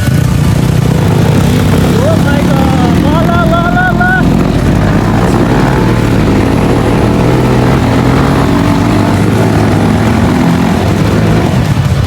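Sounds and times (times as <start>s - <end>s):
dirt bike engine running: 0.0s - 12.0s.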